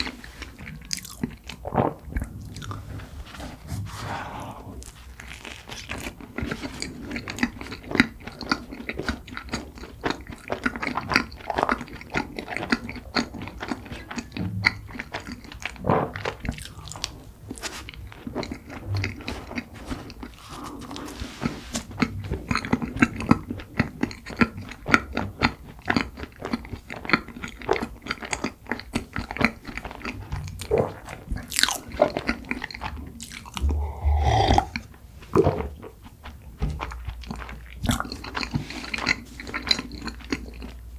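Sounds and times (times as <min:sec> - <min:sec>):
person biting and chewing: 0:00.9 - 0:02.0, 0:33.2 - 0:34.8
mouth clicks and crackles: 0:33.2 - 0:34.9.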